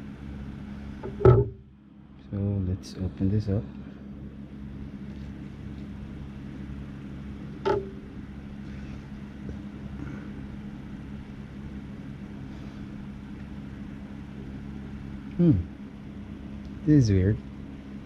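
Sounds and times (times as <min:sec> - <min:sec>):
low hum: 0:00.0 - 0:18.0.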